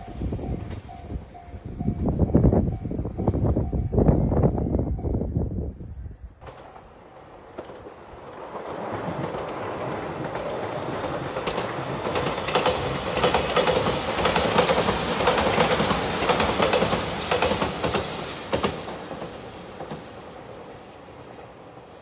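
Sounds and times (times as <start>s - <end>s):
electric train passing: 0.0s - 5.7s, 6.3s - 22.0s
wheels clattering over rail joints: 6.4s - 20.2s
high wheel squeal: 13.0s - 21.2s.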